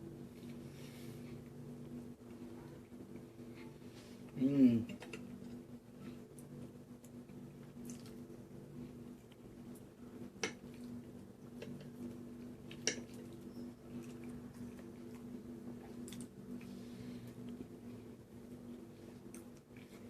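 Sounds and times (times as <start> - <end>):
steady low hum: 0.0 - 20.0
mouth chewing pasta: 5.2 - 20.0.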